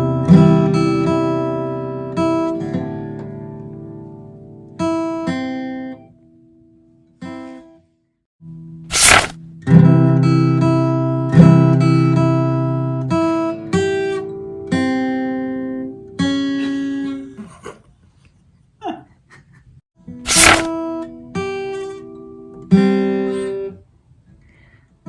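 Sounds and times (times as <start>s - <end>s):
acoustic guitar chords: 0.0s - 7.5s, 9.4s - 17.1s, 20.7s - 23.8s
harsh noise burst: 8.9s - 9.3s, 20.3s - 20.7s.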